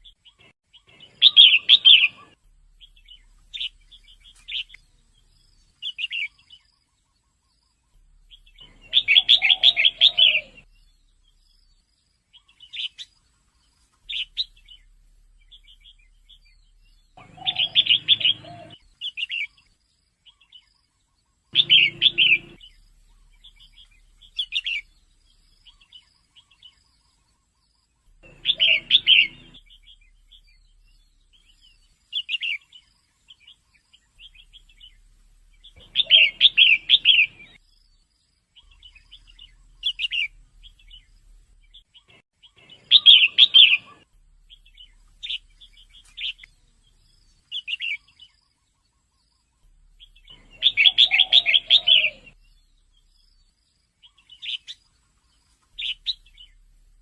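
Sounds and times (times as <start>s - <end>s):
bird chattering chirps: 0.0s - 4.8s, 7.9s - 10.9s, 14.1s - 19.6s, 21.5s - 27.3s, 28.0s - 35.0s, 35.6s - 37.6s, 38.6s - 41.1s, 41.7s - 48.8s, 49.5s - 53.1s
single bird chirps: 0.0s - 13.2s, 14.0s - 38.0s, 38.6s - 56.6s.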